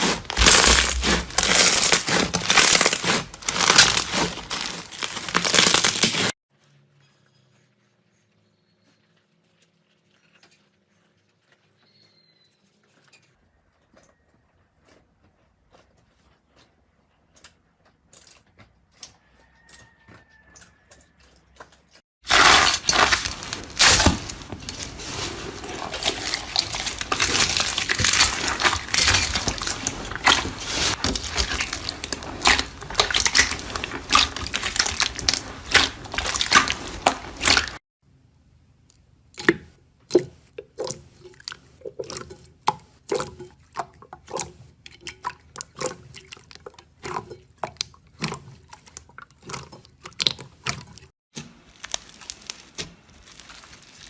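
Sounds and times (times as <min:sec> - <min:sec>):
pops and crackles: 0:00.0 - 0:06.3, 0:22.3 - 0:37.8, 0:49.6 - 0:54.0
slime squelching: 0:00.0 - 0:06.4, 0:21.5 - 0:37.8, 0:39.3 - 0:54.0.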